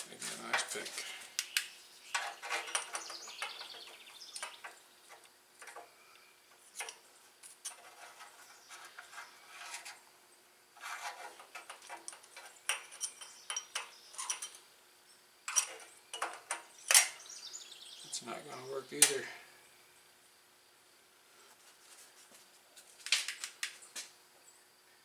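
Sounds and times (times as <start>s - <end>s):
metal hand tools clinking: 11.8s - 14.6s.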